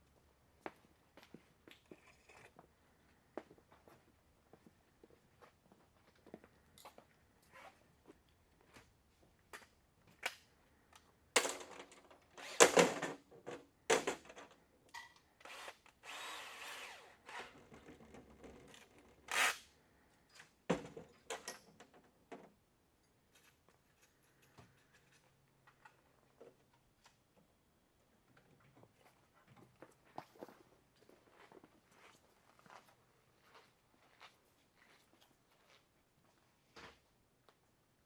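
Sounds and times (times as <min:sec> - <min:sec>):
power drill running: 0:12.4 - 0:12.8, 0:15.5 - 0:17.4.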